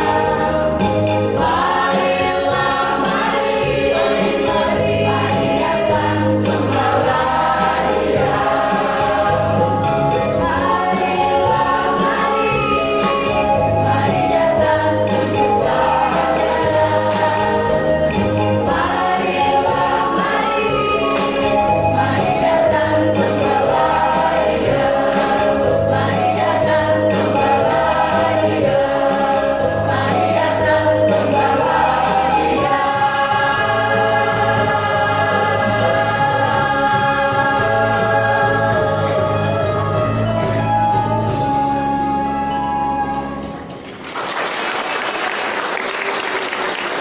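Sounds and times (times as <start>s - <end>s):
choir singing: 0.0s - 42.3s.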